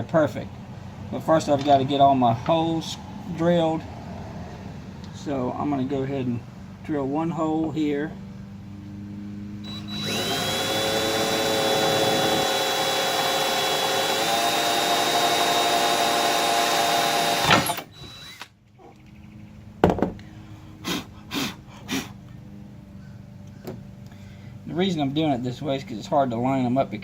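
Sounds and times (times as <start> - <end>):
power drill whining: 9.6 - 18.5.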